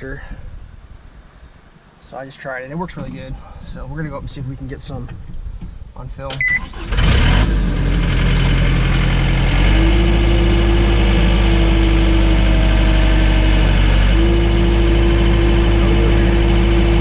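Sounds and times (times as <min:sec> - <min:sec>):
backhoe engine running: 0:06.5 - 0:17.0
steady humming tone: 0:10.1 - 0:17.0.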